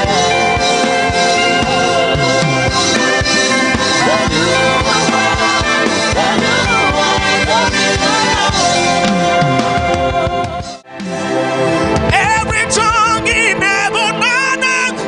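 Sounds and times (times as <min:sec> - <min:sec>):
steady drum beat: 0:00.0 - 0:11.2, 0:11.8 - 0:14.2
gospel band playing: 0:00.0 - 0:15.0.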